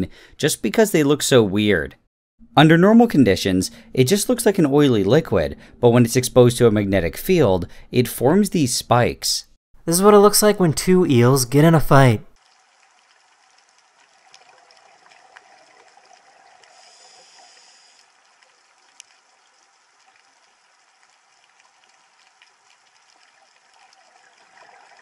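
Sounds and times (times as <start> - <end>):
faint trickling water: 12.3 - 25.0.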